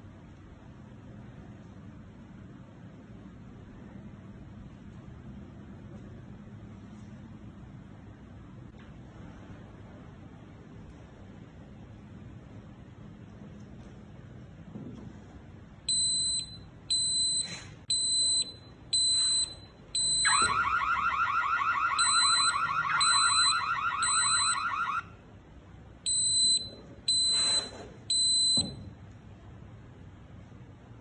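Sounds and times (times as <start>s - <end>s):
smoke alarm high-pitched beeps: 15.9s - 25.1s, 26.1s - 28.9s
warbling alarm tone: 19.0s - 25.2s.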